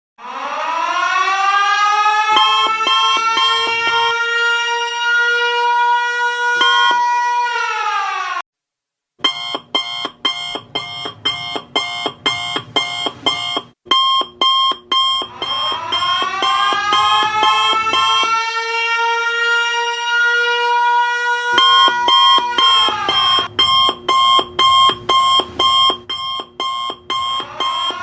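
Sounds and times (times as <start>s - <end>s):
fast pulsing alarm beeps: 2.3s - 4.2s, 6.6s - 7.0s, 9.2s - 18.4s, 21.5s - 28.0s
alarm tone: 2.3s - 4.5s, 6.6s - 7.1s, 9.2s - 18.5s, 21.4s - 28.0s.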